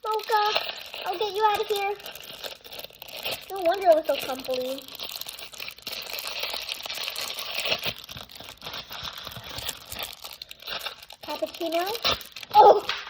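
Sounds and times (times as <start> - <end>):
wrapping crinkling: 0.0 - 13.0.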